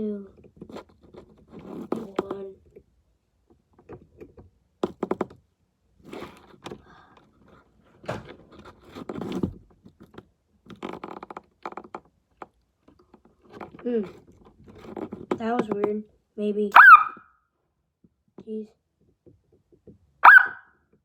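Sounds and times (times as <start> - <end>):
scrapes and knocks: 0.3 - 2.8, 3.5 - 16.1.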